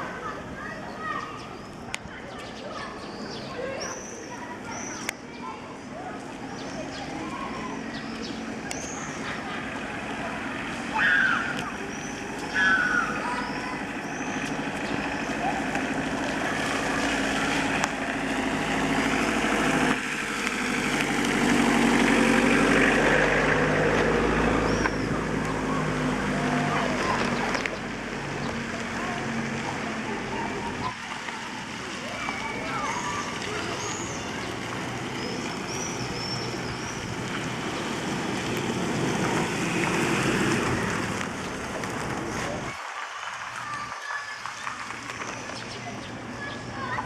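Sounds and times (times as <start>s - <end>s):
tyres spraying water: 0.0s - 47.0s
vehicle engine running: 11.6s - 42.8s.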